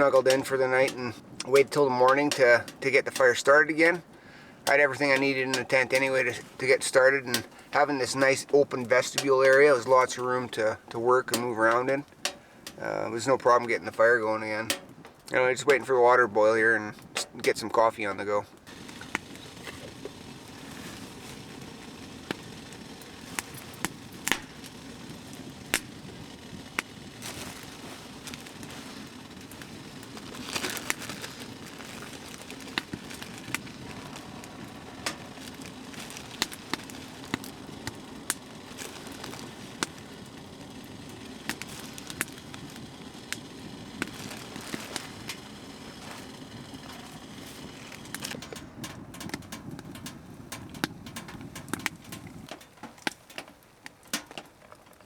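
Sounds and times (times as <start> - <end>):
sharp pops: 0.0 - 15.9, 16.9 - 17.8, 18.6 - 54.6
wood fire crackling: 0.0 - 55.0
steady low rush: 32.6 - 52.5.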